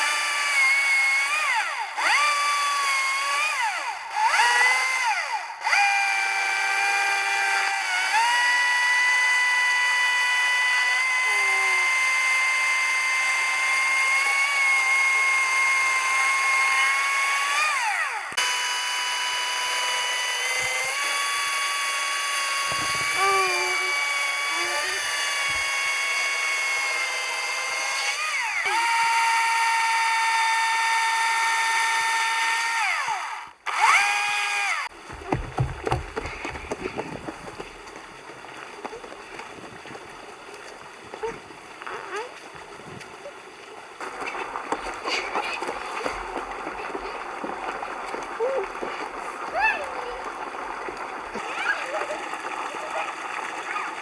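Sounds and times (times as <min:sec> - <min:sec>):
power drill whining: 0:00.0 - 0:38.0.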